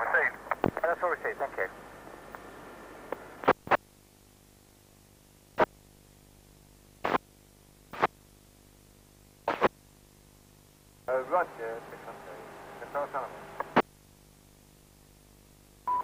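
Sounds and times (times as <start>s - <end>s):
radio static crackle: 0.0s - 4.0s, 5.5s - 5.9s, 6.9s - 8.3s, 9.1s - 10.0s, 11.0s - 14.0s
faint steady hum: 0.0s - 16.0s.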